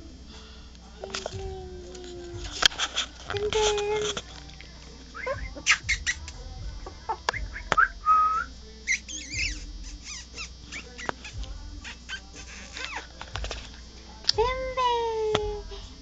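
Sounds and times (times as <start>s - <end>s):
puppies whining and squeaking: 8.9s - 13.1s.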